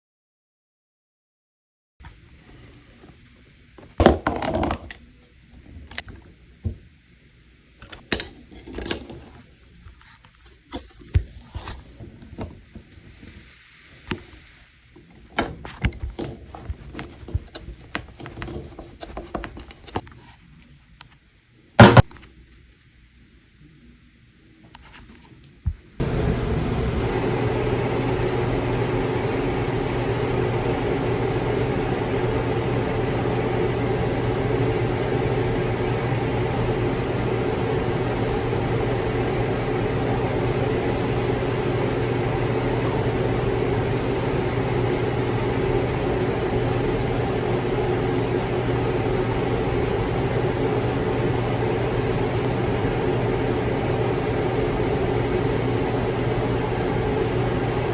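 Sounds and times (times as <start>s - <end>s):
machine humming and whooshing: 26.0s - 57.9s.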